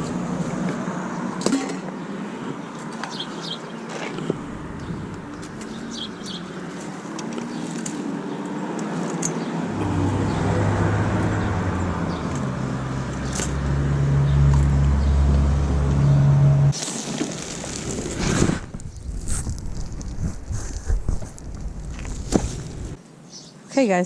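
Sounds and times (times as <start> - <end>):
road traffic: 0.0 - 23.1
vehicle engine humming: 4.1 - 9.0, 9.6 - 16.8.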